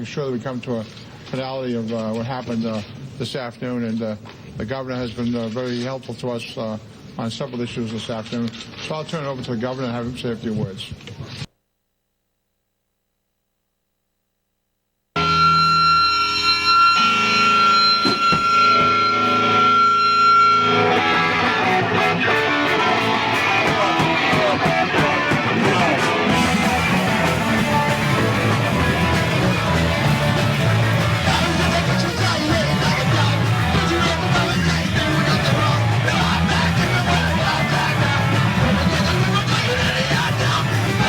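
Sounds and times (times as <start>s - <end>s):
punk rock band playing live: 15.2s - 41.0s
sustained guitar chords: 15.2s - 41.0s
drums crashing: 17.4s - 20.1s, 20.7s - 41.0s.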